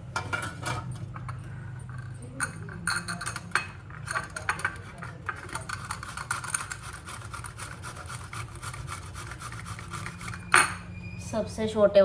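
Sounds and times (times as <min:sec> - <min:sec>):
ginger scraping on hand grater: 0:05.6 - 0:10.5.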